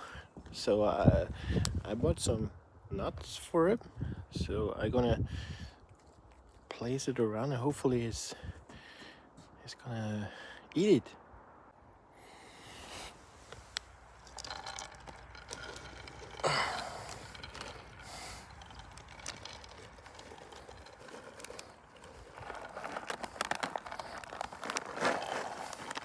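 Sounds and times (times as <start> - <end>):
crackles and clicks: 13.5 - 26.0
dry leaves rustling and crunching: 14.1 - 26.0.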